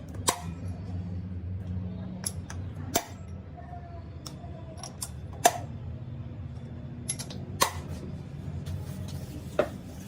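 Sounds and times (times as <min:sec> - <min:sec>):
metallic clinks and taps: 0:07.0 - 0:07.5.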